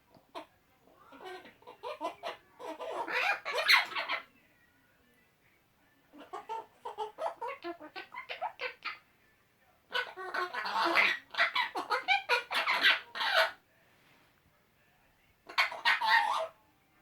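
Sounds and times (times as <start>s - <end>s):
parrots chattering: 0.2s - 4.3s, 6.1s - 9.0s, 9.9s - 13.6s, 15.5s - 16.6s.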